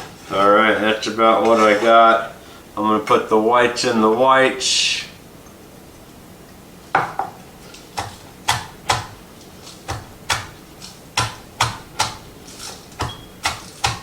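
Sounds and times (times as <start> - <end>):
knife chopping on cutting board: 7.9 - 14.0.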